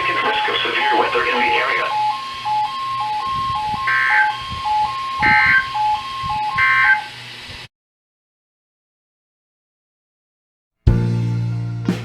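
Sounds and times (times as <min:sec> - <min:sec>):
high buzzy beep: 0:00.0 - 0:07.2
two-tone hi-lo beeping: 0:00.0 - 0:07.2.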